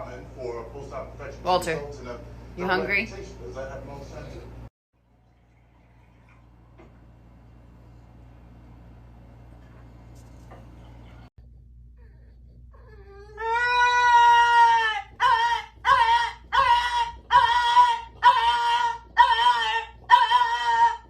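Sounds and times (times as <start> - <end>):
dog whining: 12.0 - 21.0.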